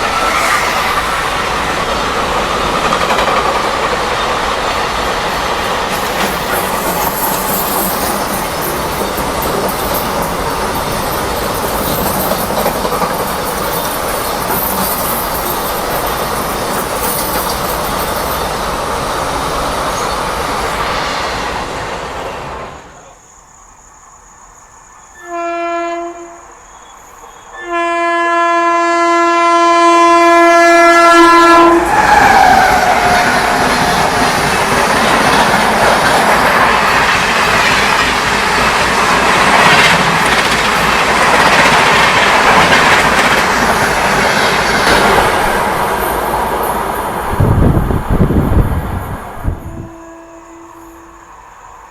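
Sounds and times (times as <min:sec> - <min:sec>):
train rushing and wheel clatter: 0:00.0 - 0:51.9
locomotive horn blasts: 0:25.2 - 0:26.5, 0:27.5 - 0:31.9, 0:49.5 - 0:51.4.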